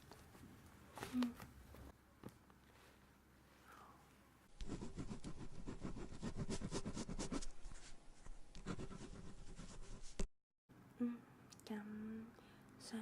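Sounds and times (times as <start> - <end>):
pen scratching on paper: 4.6 - 7.9, 8.5 - 10.3.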